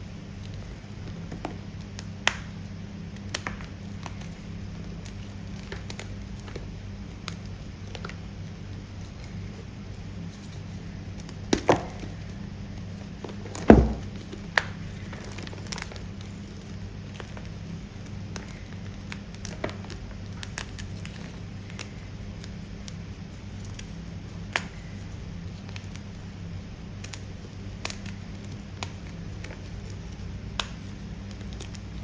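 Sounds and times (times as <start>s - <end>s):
steady low hum: 0.0s - 32.0s
deep thump: 13.7s - 14.1s.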